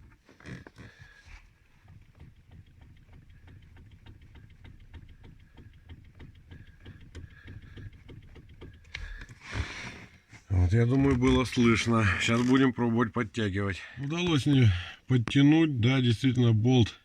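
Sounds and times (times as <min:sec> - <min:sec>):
faint knocking of steering joint: 0:00.0 - 0:12.6.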